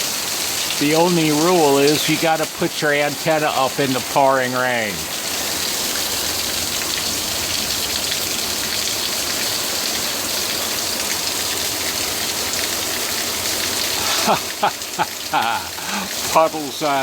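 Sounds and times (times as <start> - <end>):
heavy rain pouring: 0.0 - 17.0.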